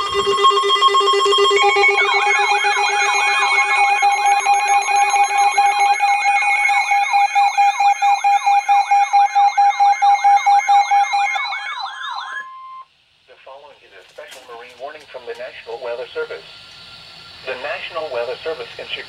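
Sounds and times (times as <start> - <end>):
fast yelping electronic siren: 0.0 - 12.8
high warbling siren: 0.0 - 12.8
steady alarm tones: 0.0 - 12.9, 13.5 - 19.0.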